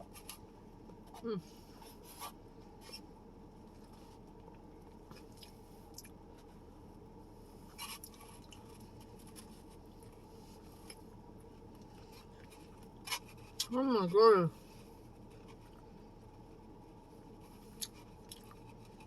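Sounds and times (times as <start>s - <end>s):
low room hum: 0.0s - 19.0s
quiet chewing: 3.6s - 6.6s, 7.7s - 13.7s, 14.6s - 19.0s.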